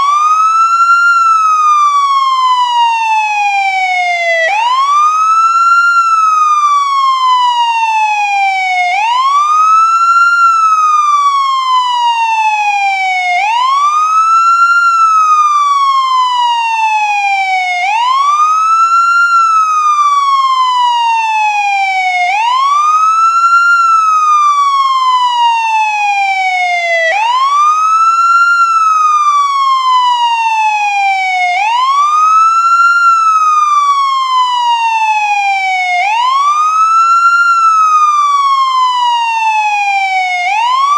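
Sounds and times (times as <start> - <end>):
ambulance siren wailing: 0.0 - 40.9.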